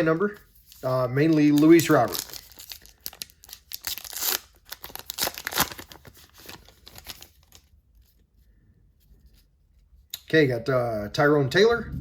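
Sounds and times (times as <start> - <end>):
plastic foil wrapper tearing: 1.2 - 7.6.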